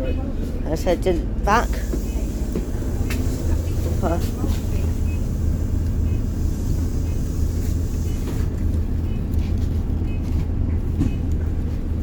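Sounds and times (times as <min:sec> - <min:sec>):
bus engine droning: 0:00.0 - 0:12.0.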